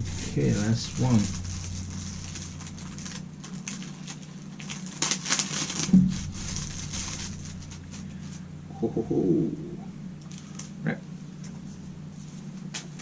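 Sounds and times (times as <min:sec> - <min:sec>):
packaging rustling and crackling: 0:00.0 - 0:08.4, 0:10.2 - 0:10.8
steady low hum: 0:00.0 - 0:13.0.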